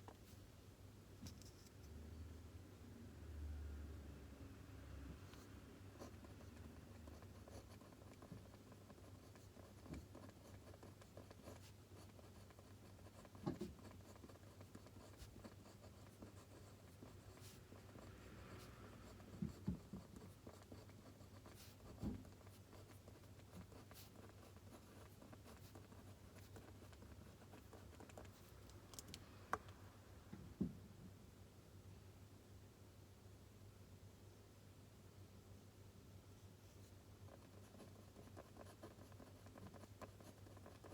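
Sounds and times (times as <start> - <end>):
pen writing on paper: 5.3 - 28.4, 37.3 - 40.9.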